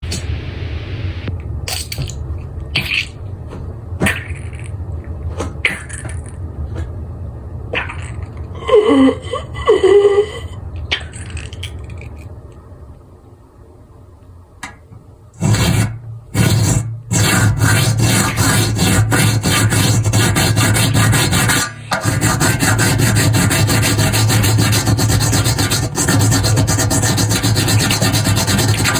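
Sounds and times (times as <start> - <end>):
low rumbling drone: 0.0 - 13.3
groan-like cries: 8.5 - 10.7
loud rasping scrape: 15.4 - 28.9.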